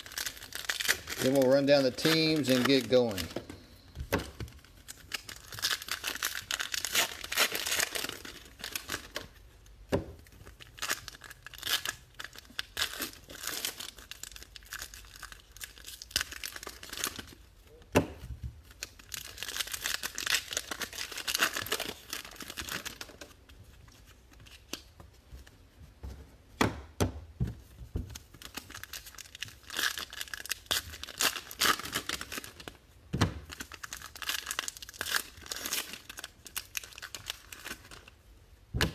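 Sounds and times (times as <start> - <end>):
card packs tearing and crinkling: 0.0 - 3.5, 4.5 - 9.4, 10.4 - 17.4, 18.7 - 23.4, 28.2 - 32.7, 33.4 - 38.1.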